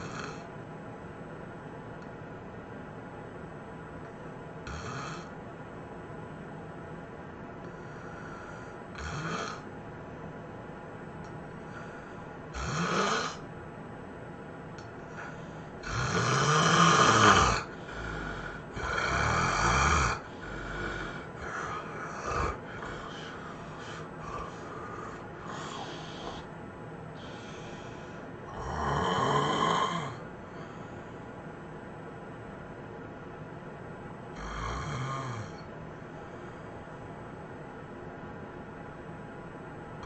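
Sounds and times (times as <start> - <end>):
person snoring heavily: 0.0 - 0.5, 4.6 - 5.3, 7.8 - 9.6, 11.7 - 13.4, 15.1 - 26.5, 27.2 - 30.8, 34.4 - 35.7
soft snorts and breaths: 17.5 - 26.6.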